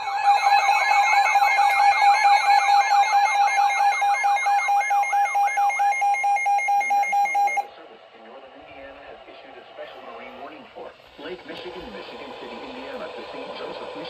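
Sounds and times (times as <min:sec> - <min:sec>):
steady alarm tone: 0:00.0 - 0:07.7.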